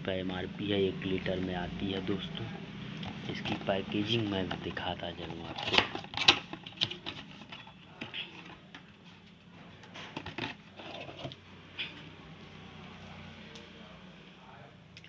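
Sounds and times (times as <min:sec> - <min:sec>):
bottle and packaging handled: 0:02.9 - 0:08.8, 0:10.0 - 0:11.4.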